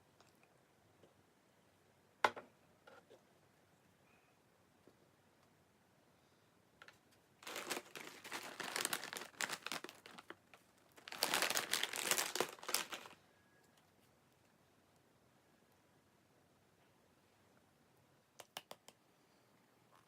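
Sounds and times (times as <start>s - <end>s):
plastic snack bag crinkling: 7.4s - 13.2s.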